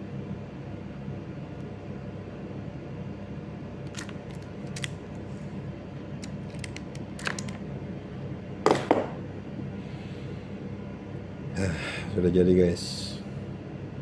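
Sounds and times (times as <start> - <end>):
crimping tool loud snap: 8.7 - 9.2.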